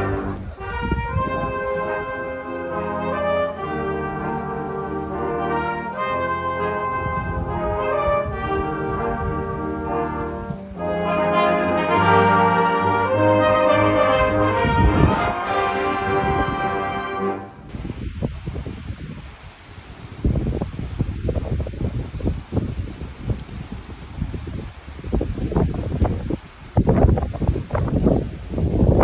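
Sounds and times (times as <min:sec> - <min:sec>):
brass instruments playing chords: 0:00.0 - 0:18.6.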